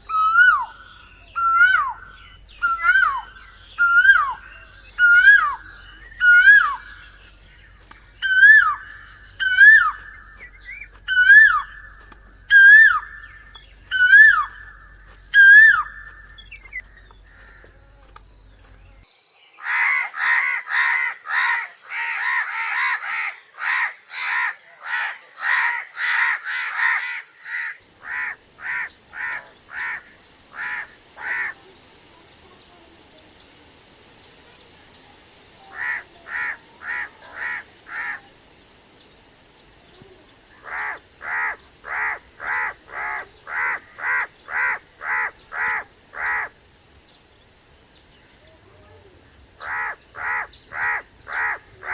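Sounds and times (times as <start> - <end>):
crow cawing: 0.1 - 7.1, 8.2 - 16.6, 17.2 - 17.7, 19.7 - 31.6, 35.7 - 38.2, 40.6 - 46.5, 49.6 - 51.9.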